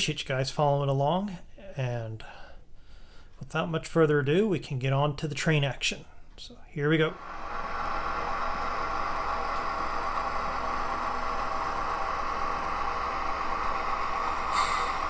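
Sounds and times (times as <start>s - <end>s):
model locomotive engine idling: 7.1s - 15.0s.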